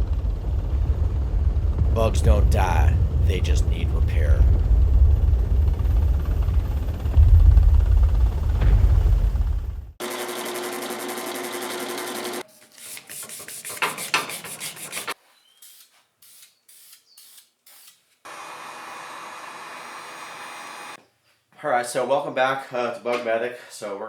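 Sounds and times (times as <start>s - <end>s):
small electric motor running: 10.0s - 12.4s, 18.3s - 21.0s
hand sanding strokes: 12.4s - 18.0s
short hissing bursts: 12.8s - 18.0s.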